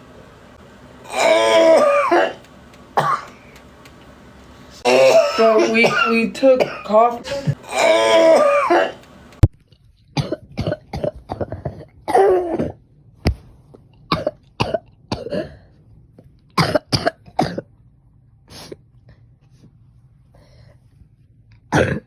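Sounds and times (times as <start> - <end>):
people coughing: 3.0 - 3.3, 4.9 - 9.0.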